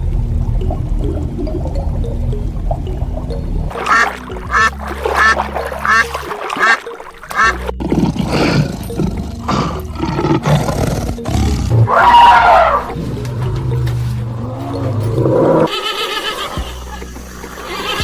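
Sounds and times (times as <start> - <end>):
background music: 0.0 - 18.0
animal calls: 3.7 - 18.0.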